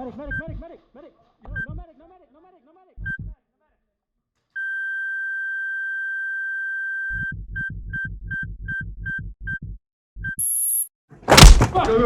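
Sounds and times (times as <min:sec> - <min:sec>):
electronic beeper beeping: 0:10.3 - 0:10.9.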